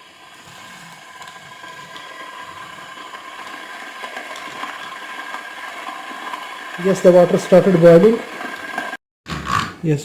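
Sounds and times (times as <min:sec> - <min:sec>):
electric kettle heating water: 0:00.0 - 0:09.0.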